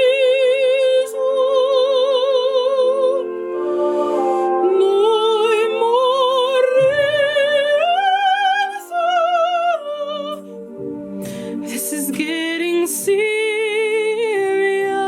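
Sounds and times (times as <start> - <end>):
woman singing operatically: 0.0 - 3.7, 4.4 - 10.6, 11.4 - 15.0
backing accompaniment: 3.3 - 15.0.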